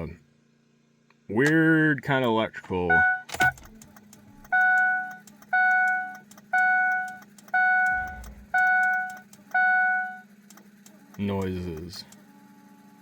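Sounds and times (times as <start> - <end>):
low electrical hum: 0.0 - 13.0
truck engine cranking: 3.3 - 9.8, 10.4 - 12.2.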